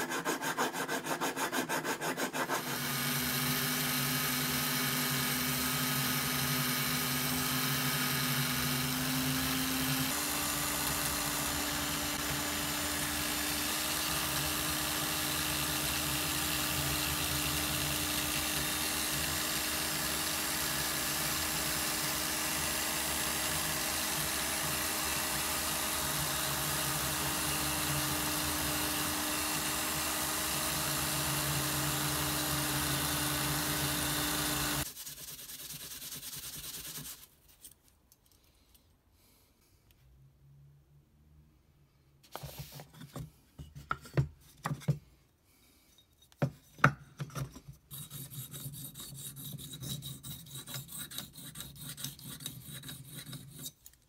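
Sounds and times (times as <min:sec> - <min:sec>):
small electric power tool humming: 0:02.6 - 0:34.9.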